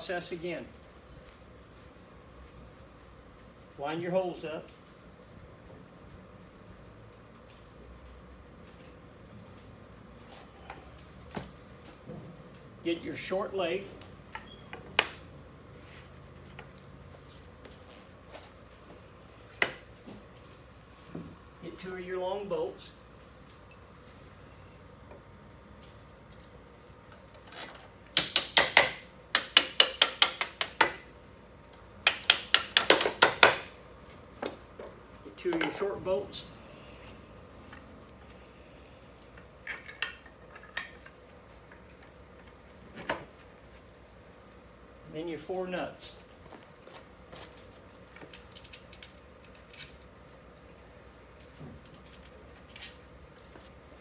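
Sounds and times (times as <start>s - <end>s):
faint hum: 0.0s - 54.0s
small metal hardware clicking: 25.8s - 31.1s, 31.7s - 33.8s, 39.1s - 42.5s
hammer tapping bolts: 27.1s - 31.1s, 32.0s - 33.8s.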